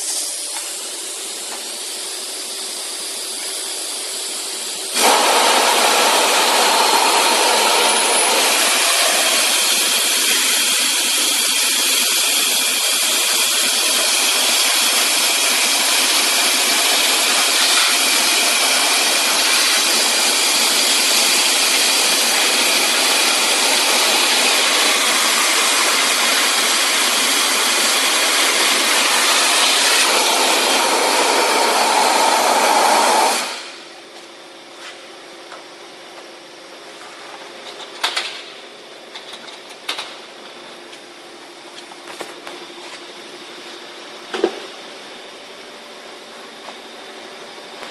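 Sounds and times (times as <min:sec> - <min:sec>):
vacuum cleaner rushing hiss: 0:00.0 - 0:33.9.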